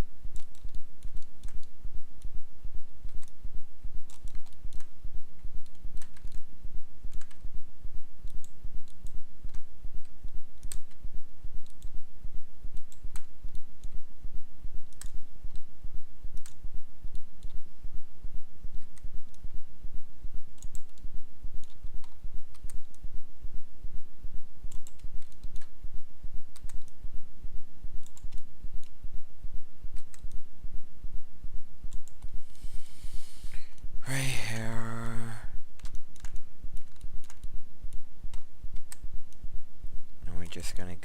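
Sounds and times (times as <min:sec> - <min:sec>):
mouse clicks: 0:04.1 - 0:04.9, 0:08.2 - 0:11.0, 0:16.3 - 0:17.6, 0:20.6 - 0:23.0, 0:26.5 - 0:27.0, 0:28.0 - 0:29.0, 0:29.9 - 0:30.4.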